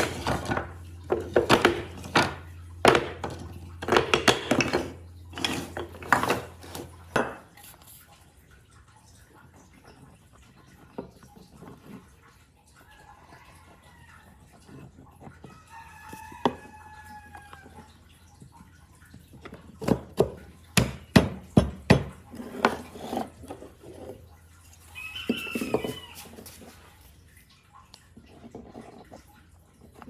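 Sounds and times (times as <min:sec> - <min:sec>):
rooster crowing: 0:15.5 - 0:17.8, 0:24.9 - 0:26.5.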